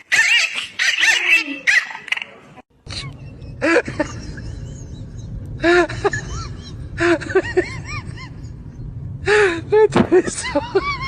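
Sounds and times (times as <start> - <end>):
steady low rumble: 2.7 - 11.0.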